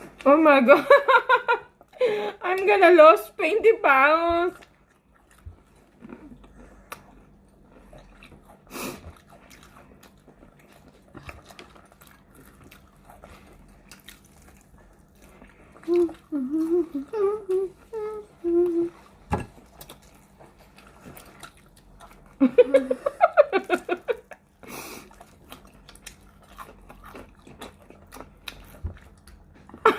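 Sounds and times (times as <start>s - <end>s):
faint chewing: 3.7s - 29.9s
person humming: 15.9s - 19.1s.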